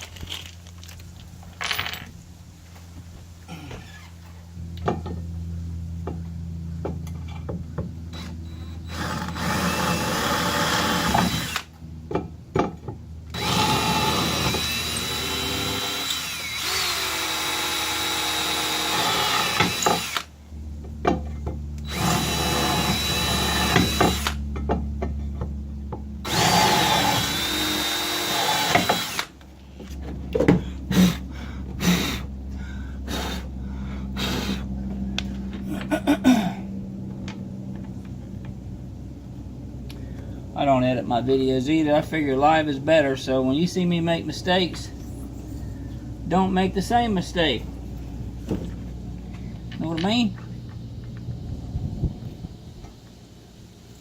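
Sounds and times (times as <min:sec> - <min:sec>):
power drill whining: 0:08.1 - 0:11.8, 0:13.3 - 0:20.3, 0:21.8 - 0:24.4, 0:26.2 - 0:29.4, 0:33.0 - 0:33.5, 0:34.2 - 0:34.6.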